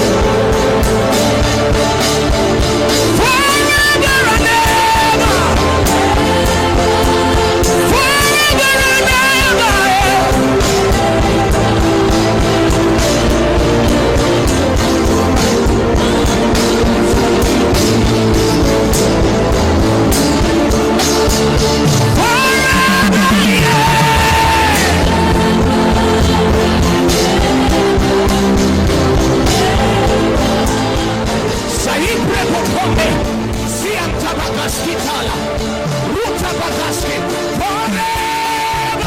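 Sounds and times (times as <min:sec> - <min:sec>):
worship music with beat: 0:00.0 - 0:39.0
person singing held line: 0:22.1 - 0:27.0.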